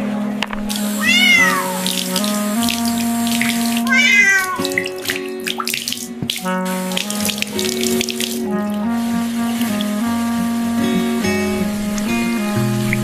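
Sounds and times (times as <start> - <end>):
background music held notes: 0.0 - 13.0
hiss like running water: 0.7 - 13.0
cat meowing: 1.0 - 2.2, 3.8 - 4.8.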